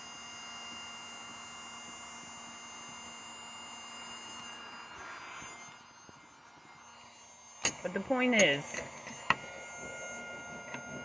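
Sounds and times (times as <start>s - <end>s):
faint high whine: 0.0s - 11.0s
low electrical hum: 0.0s - 11.0s.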